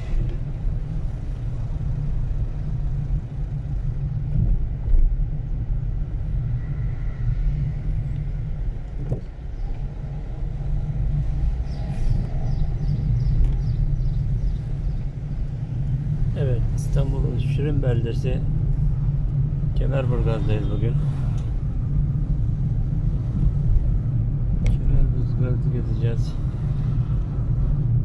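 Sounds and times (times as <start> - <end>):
car road and engine rumble: 0.0 - 28.0.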